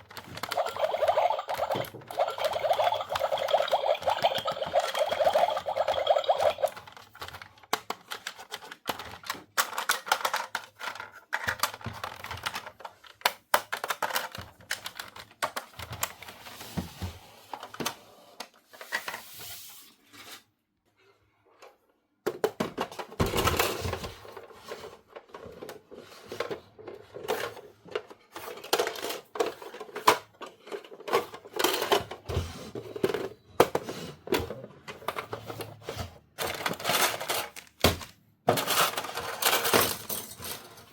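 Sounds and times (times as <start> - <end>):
plastic toy pieces clicking: 6.3 - 15.9.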